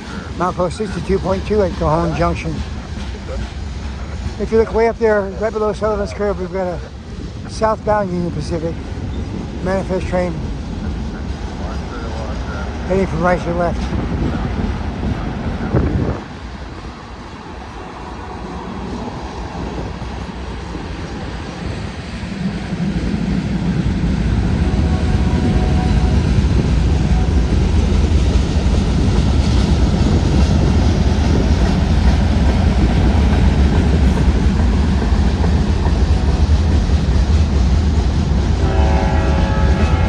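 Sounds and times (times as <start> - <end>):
freight train rumbling past: 0.0 - 40.0.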